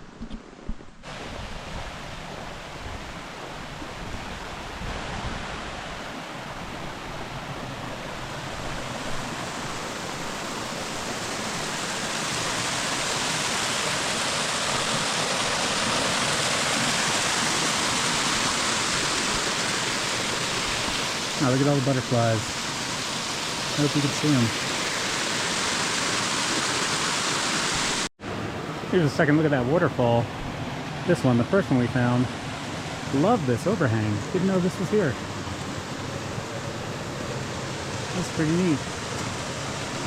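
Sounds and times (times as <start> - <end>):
water rushing over waterfall: 8.1 - 40.0.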